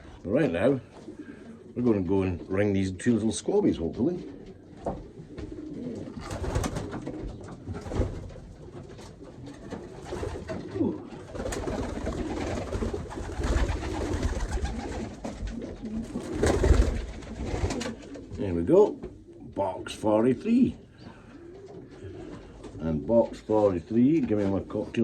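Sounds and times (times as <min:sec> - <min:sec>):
pigeons cooing: 0:00.0 - 0:25.0.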